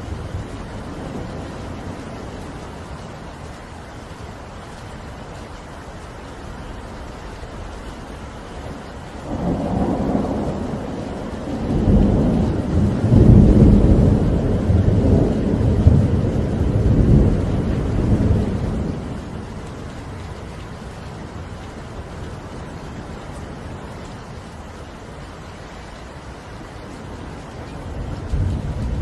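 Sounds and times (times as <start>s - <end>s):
steady rain: 0.0s - 29.0s
thunder rolling: 9.2s - 19.5s, 27.7s - 29.0s.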